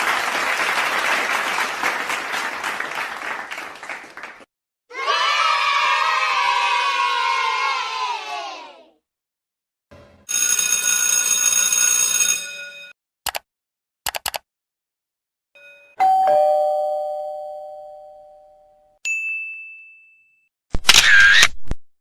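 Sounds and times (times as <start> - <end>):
sharp clicks: 14.1 - 14.4
short high ding: 15.6 - 20.5
two-note doorbell chime: 15.6 - 20.5.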